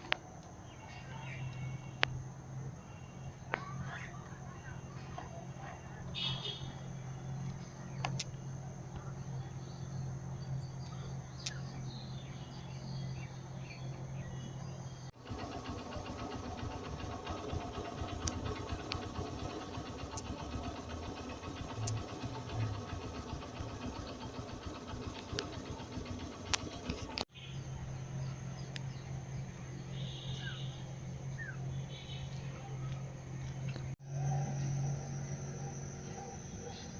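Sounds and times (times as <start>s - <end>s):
busy engine drone: 0.0s - 36.9s
engine humming steadily: 0.0s - 36.9s
sharp clicks: 15.5s - 27.3s.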